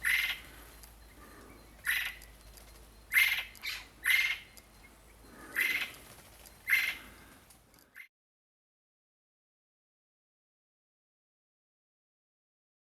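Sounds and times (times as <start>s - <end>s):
bird harsh calls: 0.0s - 8.1s.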